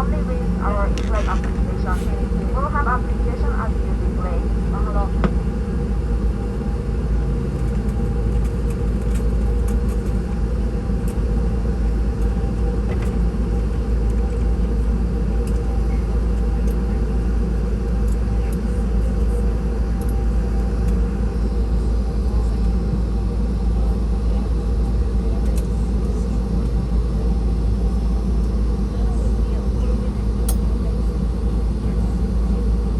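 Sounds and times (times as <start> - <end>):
faint steady whine: 0.0 - 7.0
airliner cabin rumble: 0.0 - 32.9
faint clicks in cabin: 7.6 - 10.2, 12.2 - 13.2, 15.4 - 16.8, 20.0 - 20.2, 24.8 - 25.8, 30.4 - 30.8.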